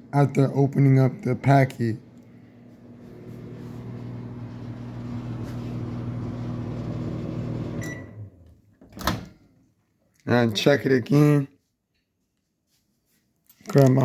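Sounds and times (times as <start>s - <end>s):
microwave oven humming: 1.0s - 8.6s
microwave beep: 6.2s - 8.4s.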